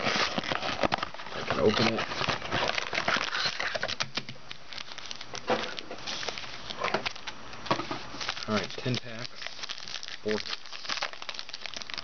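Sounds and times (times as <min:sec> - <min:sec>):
cardboard rustling: 0:00.0 - 0:04.0
wrapper crinkling: 0:00.0 - 0:12.0.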